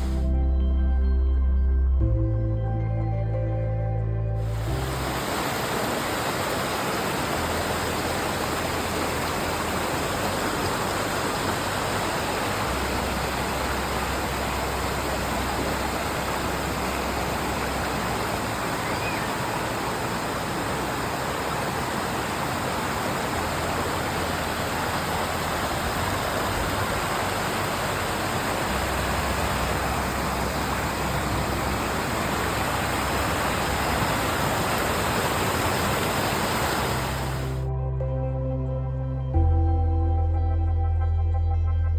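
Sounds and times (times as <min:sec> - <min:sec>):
waterfall rushing: 0:00.0 - 0:00.3, 0:04.4 - 0:37.6
low bass drone: 0:00.0 - 0:06.0, 0:06.6 - 0:22.0, 0:23.1 - 0:41.9.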